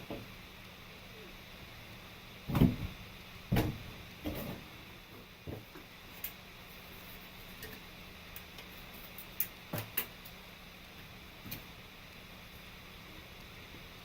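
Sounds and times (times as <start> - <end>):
faint steady background hum: 0.0 - 14.0.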